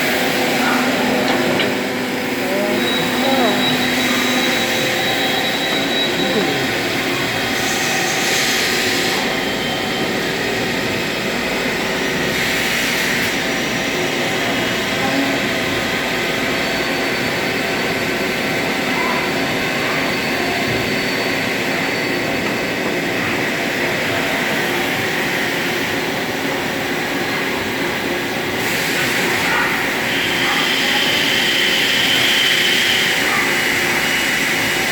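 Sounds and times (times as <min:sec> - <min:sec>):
machine hum with tones: 0:00.0 - 0:12.3.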